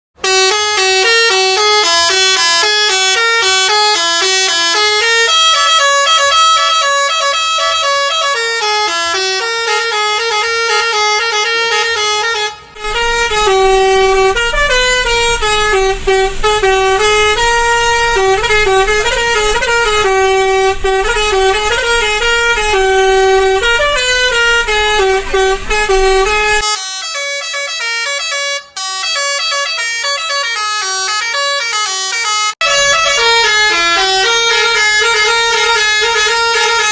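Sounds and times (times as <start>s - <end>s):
multi-tone bus horn playing tune: 0.2s - 36.9s
low rumble: 12.8s - 26.6s.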